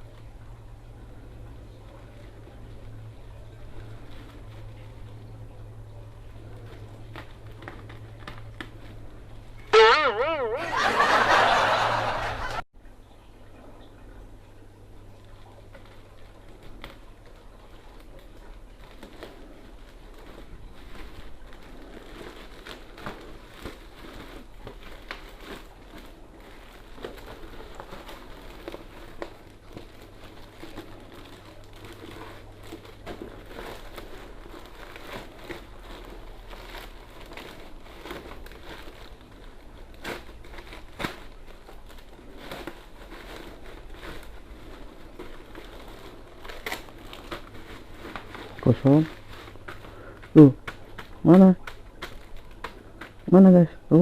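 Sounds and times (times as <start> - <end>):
plastic packaging crinkling: 1.5 - 12.2, 15.1 - 53.4.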